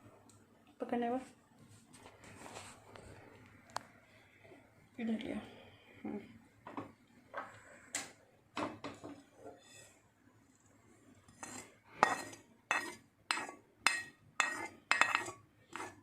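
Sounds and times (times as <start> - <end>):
metal spoon scraping metal pan: 9.5 - 10.0, 11.3 - 16.0.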